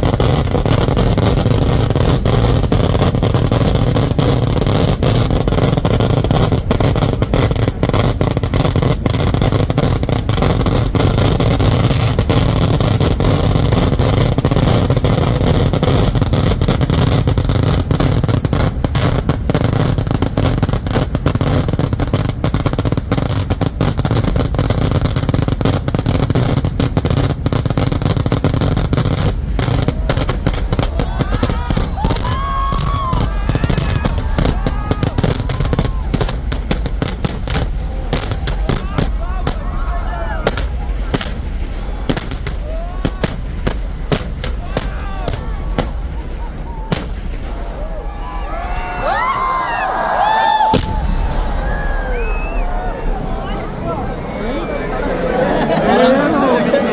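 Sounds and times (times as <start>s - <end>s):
rumble of fireworks booms: 0.0s - 55.0s
firecrackers cracking: 0.0s - 56.9s.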